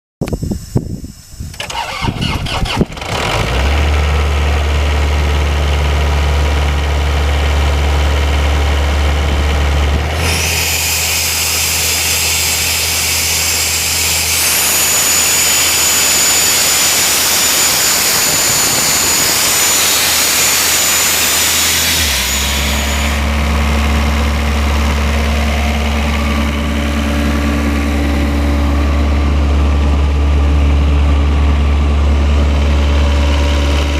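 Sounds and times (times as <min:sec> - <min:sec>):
diesel air compressor engine running: 0:00.4 - 0:33.9
air hissing with high whistle: 0:10.2 - 0:23.4.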